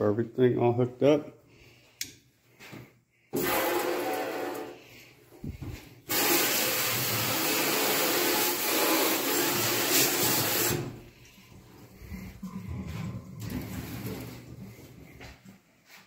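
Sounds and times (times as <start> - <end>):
water running into sink: 6.1 - 11.0.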